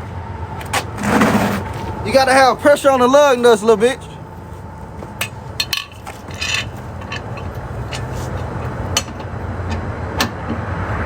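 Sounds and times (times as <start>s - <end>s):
low steady rumble: 0.0s - 11.0s
metal scrape: 0.6s - 2.0s, 4.4s - 9.4s
lug wrench metal clicks: 5.1s - 10.6s.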